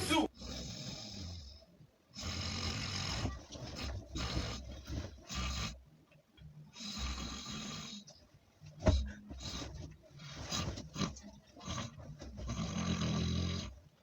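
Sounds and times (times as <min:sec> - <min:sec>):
man snoring heavily: 0:00.4 - 0:01.6, 0:02.2 - 0:05.8, 0:06.8 - 0:08.1, 0:10.6 - 0:13.8.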